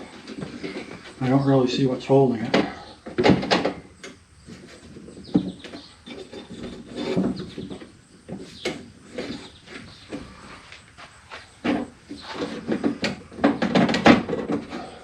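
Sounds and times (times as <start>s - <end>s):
metal knocks and clunks: 2.3s - 10.4s, 11.6s - 15.0s
high squeaky scrape: 5.8s - 7.7s.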